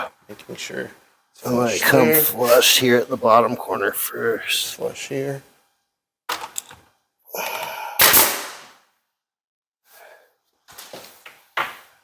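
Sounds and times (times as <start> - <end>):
pneumatic nailer firing: 8.0 - 8.8.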